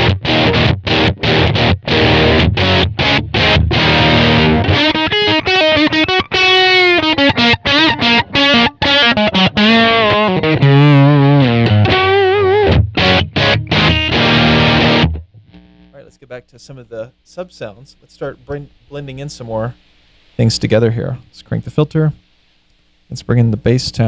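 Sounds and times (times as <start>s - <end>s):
distorted electric guitar lead: 0.0s - 16.1s.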